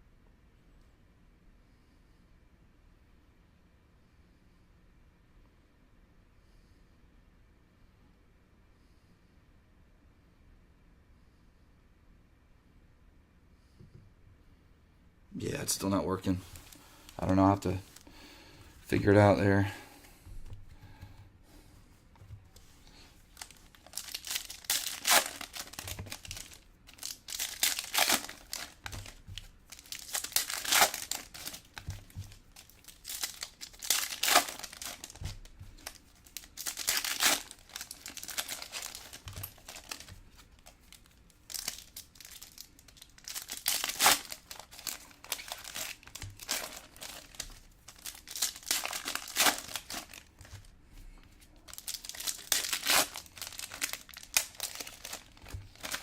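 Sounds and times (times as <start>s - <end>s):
card pack wrappers crinkling: 22.6s - 50.7s, 51.5s - 56.0s.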